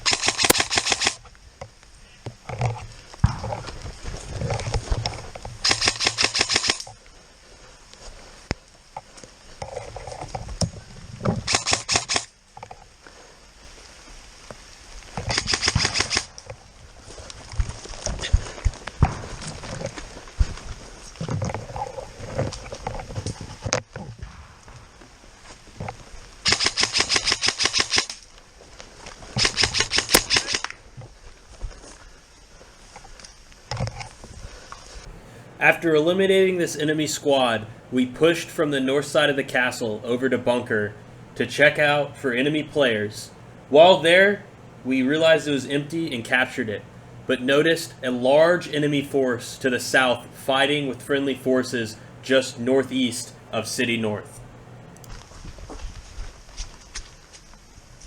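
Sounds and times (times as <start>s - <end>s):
airsoft gun rapid firing: 0.0s - 1.2s, 5.6s - 6.8s, 11.5s - 12.3s, 15.3s - 16.3s, 26.4s - 28.1s
airsoft guns firing: 0.0s - 1.2s.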